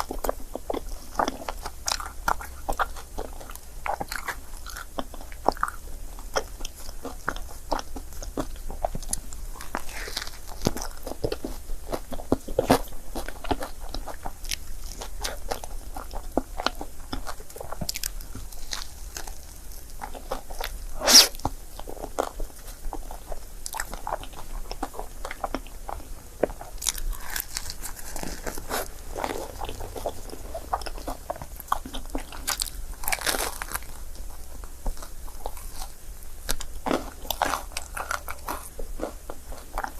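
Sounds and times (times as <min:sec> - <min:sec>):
chewing and wet mouth sounds: 0:00.0 - 0:39.9
mouth clicks and smacks: 0:20.0 - 0:32.6.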